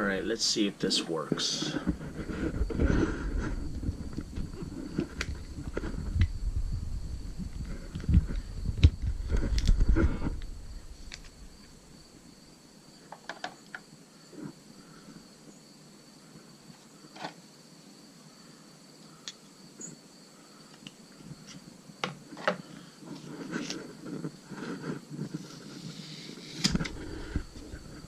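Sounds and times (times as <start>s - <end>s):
steady hiss: 0.0s - 28.0s.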